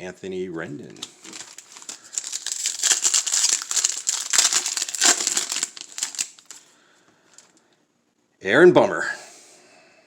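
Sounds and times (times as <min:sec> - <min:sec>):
cards rustling in hands: 0:00.9 - 0:06.7.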